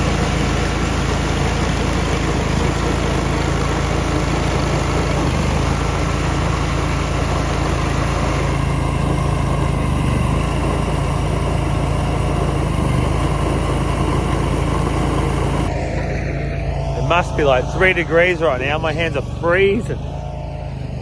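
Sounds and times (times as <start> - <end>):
large engine idling: 0.0 - 21.0.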